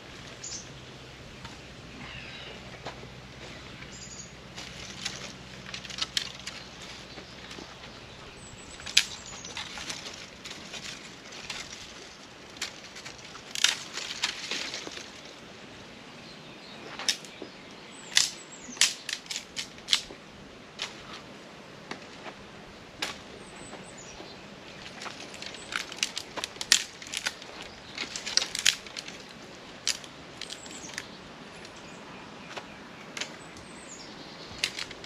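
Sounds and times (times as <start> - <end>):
dry sticks crackling and snapping: 1.4 - 15.9, 16.8 - 35.0.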